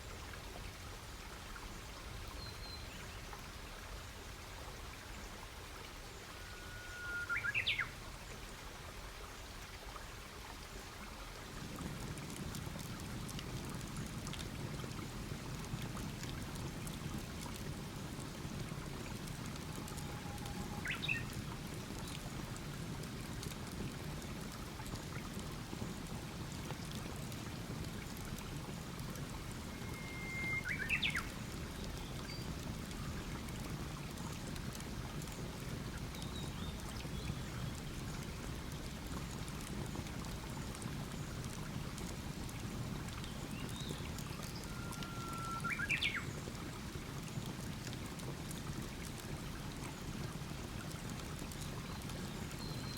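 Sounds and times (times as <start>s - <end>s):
songbird whistling: 6.4s - 7.9s, 29.8s - 31.3s, 44.5s - 46.2s
campfire hissing and crackling: 10.2s - 52.6s.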